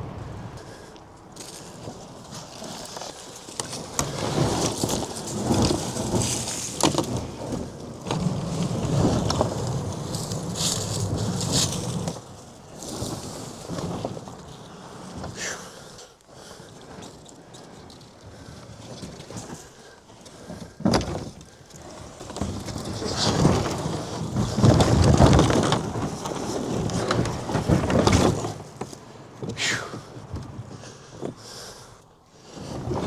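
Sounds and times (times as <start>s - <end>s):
person moving through brush: 0.7s - 7.4s, 8.5s - 14.3s.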